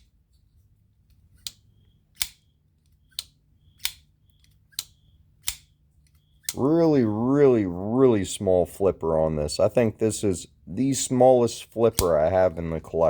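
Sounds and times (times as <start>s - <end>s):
folding knife blade clicking: 2.2s - 5.7s.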